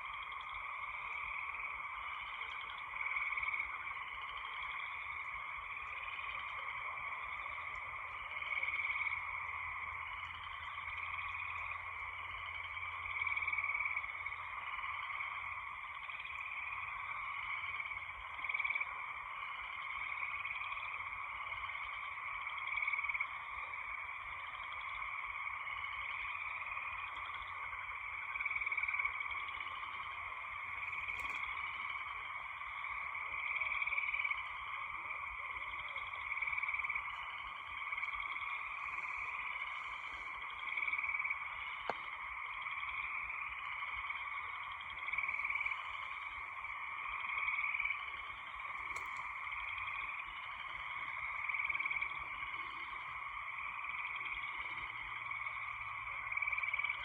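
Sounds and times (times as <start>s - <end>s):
frogs trilling: 0.0s - 57.0s
faint click: 30.9s - 31.5s, 41.8s - 42.1s, 48.8s - 49.3s.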